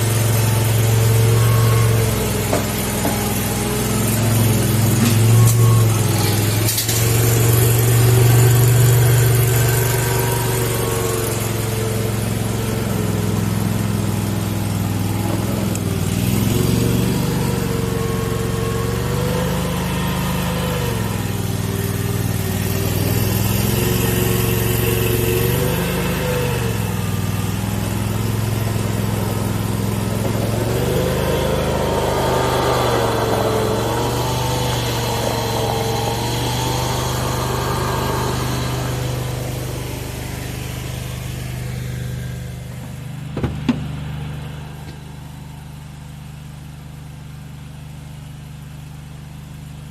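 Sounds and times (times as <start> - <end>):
wavering whine: 0.0 - 21.6
small engine running: 0.0 - 49.9.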